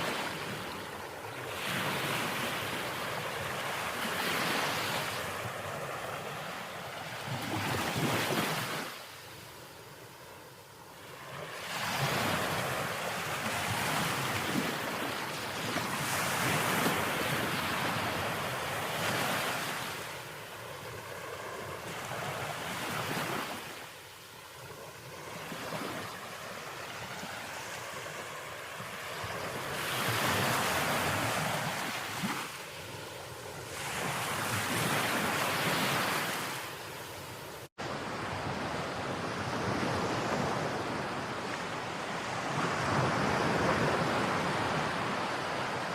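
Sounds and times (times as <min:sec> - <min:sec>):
ocean surf breaking on beach: 0:00.0 - 0:45.9.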